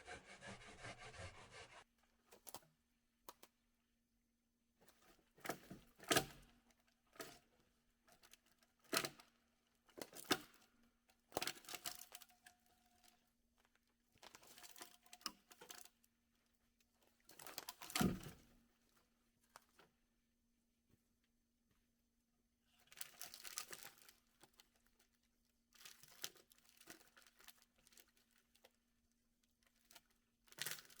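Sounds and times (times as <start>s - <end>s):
rustling crinkling and snapping: 25.8s - 28.7s.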